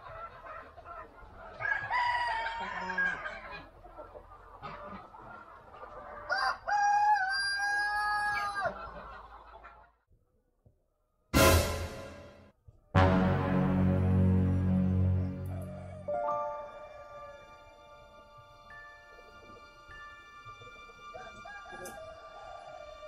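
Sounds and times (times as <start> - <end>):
rooster crowing: 6.3 - 8.8, 21.2 - 23.0
loud music: 11.4 - 16.7.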